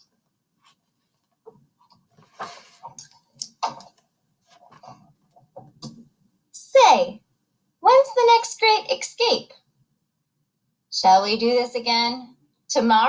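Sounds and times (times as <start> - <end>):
faint clicks and taps: 0.0 - 6.2
book page turning: 0.6 - 5.0.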